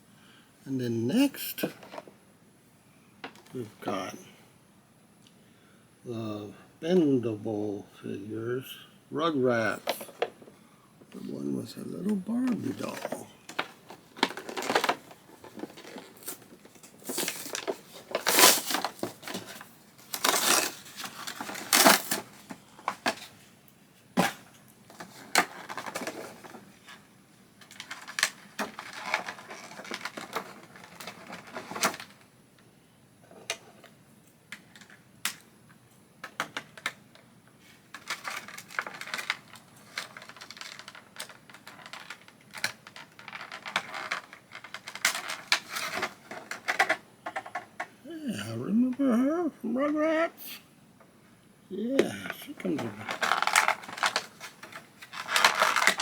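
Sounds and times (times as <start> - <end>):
packaging crinkling and tearing: 12.3 - 22.4, 27.6 - 32.2, 38.0 - 46.9, 52.6 - 56.0.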